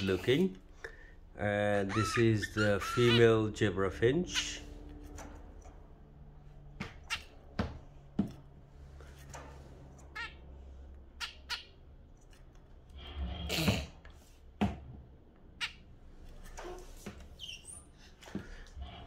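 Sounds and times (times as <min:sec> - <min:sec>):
birds chirping: 0:00.0 - 0:08.2, 0:09.9 - 0:13.6, 0:15.4 - 0:19.0.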